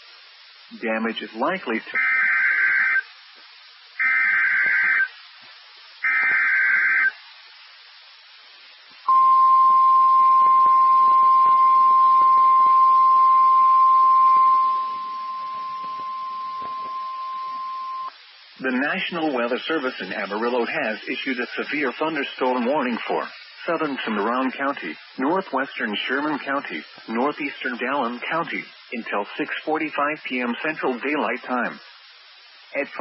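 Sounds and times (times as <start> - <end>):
steady attention tone: 9.0 - 18.9
digital data bursts: 9.1 - 31.7.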